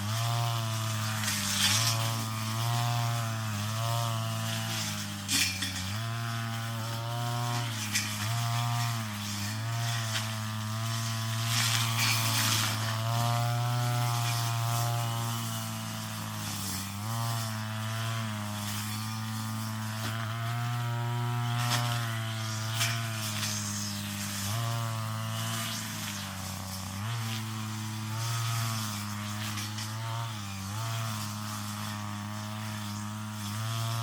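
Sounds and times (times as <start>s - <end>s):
brush cutter engine high revs: 0.0s - 34.0s.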